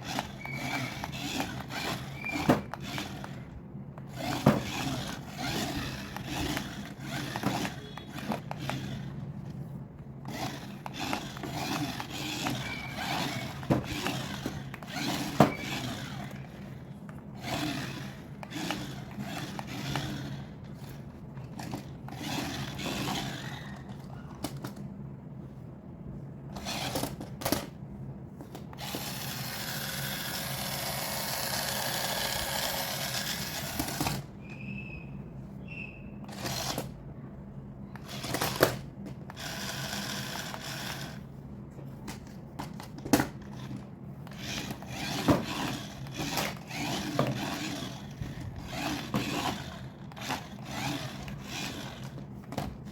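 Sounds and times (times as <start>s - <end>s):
toy motor whirring: 0.0s - 9.2s, 10.2s - 16.8s, 17.4s - 24.1s, 26.6s - 27.2s, 28.7s - 34.3s, 36.2s - 37.0s, 37.9s - 41.2s, 43.4s - 52.7s.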